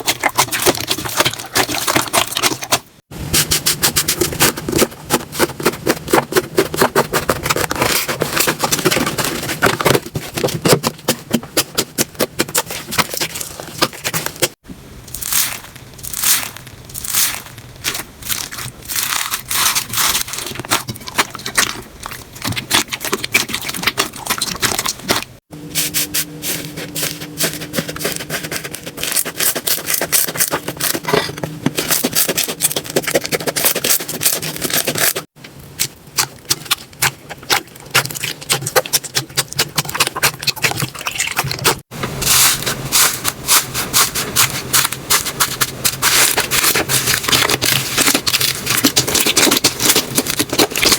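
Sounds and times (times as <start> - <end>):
slime squished by hand: 15.1 - 25.3, 35.8 - 50.9.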